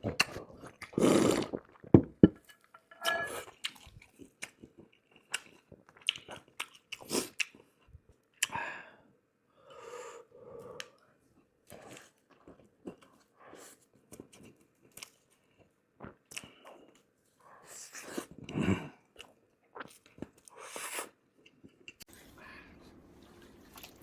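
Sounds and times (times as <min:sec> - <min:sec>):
chewing and crunching: 0:23.2 - 0:24.0.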